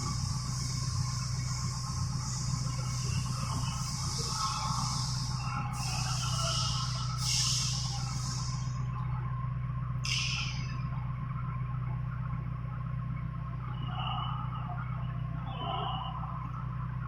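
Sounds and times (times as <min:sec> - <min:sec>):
short hissing bursts: 0:00.0 - 0:08.8
cnc router machine humming: 0:00.0 - 0:09.0.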